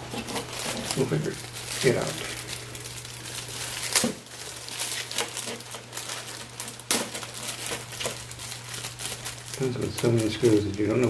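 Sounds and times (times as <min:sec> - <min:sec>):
plastic bags crinkling: 0:00.0 - 0:11.0
steady low hum: 0:00.0 - 0:11.0.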